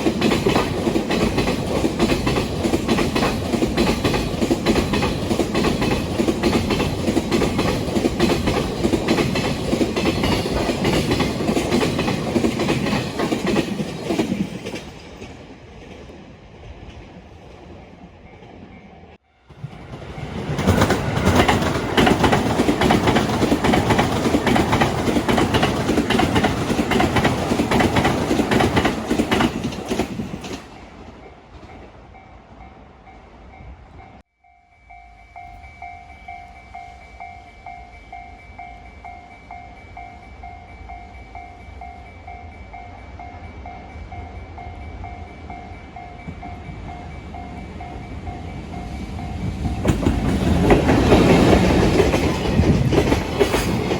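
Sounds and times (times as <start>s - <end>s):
wheels clacking over rail joints: 0.0s - 16.2s, 19.6s - 32.0s, 46.2s - 53.9s
train rumble: 0.0s - 34.3s, 34.9s - 53.9s
freight train passing: 0.0s - 53.9s
level-crossing warning bell: 30.7s - 53.9s.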